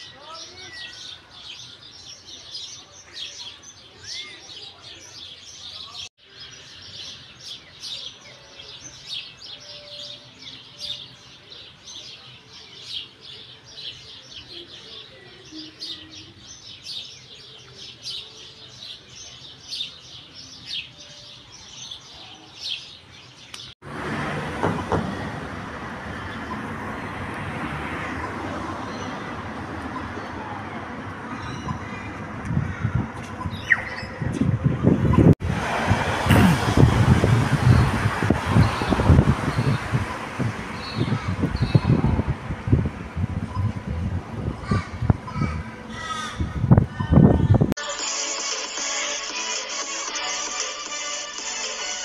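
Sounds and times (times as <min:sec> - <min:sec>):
loud steady rushing noise: 0:23.8 - 0:47.7
bird chirping rapidly: 0:33.4 - 0:34.3, 0:38.5 - 0:42.2.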